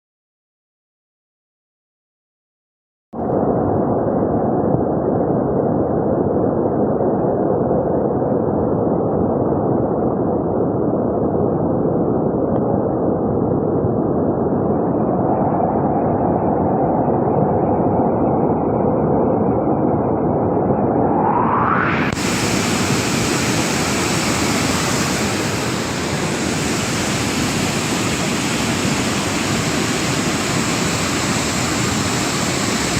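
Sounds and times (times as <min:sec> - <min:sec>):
floodwater rushing: 0:22.1 - 0:32.9.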